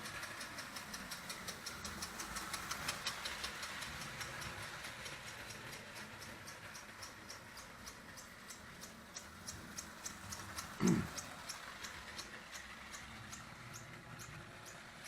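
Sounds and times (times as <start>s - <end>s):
faint motor hum: 0.0s - 15.0s
toy locomotive chugging clicks: 0.0s - 15.0s.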